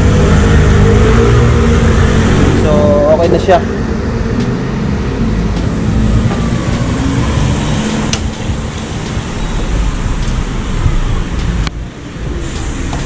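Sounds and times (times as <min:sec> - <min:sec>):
road and wind noise rumble: 0:00.0 - 0:13.0
sharp clicks: 0:10.2 - 0:10.4, 0:11.3 - 0:11.8.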